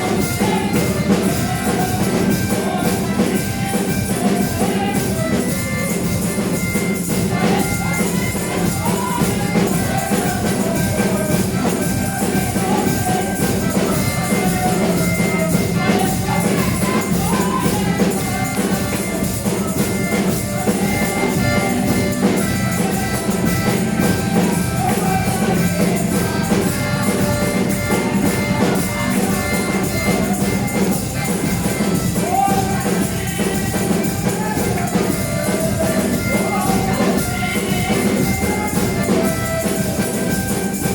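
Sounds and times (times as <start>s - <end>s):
drums beating: 0.0s - 40.9s
held instrument tones: 0.0s - 40.9s
people singing: 0.0s - 40.9s
tambourine: 0.0s - 40.9s.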